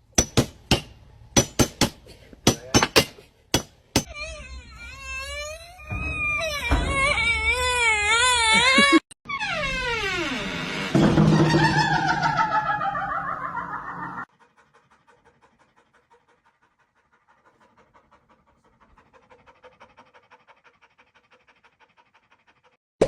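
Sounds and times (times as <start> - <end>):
crying-like sound sliding down: 4.2 - 14.2
rapid rhythmic panting: 14.2 - 22.8.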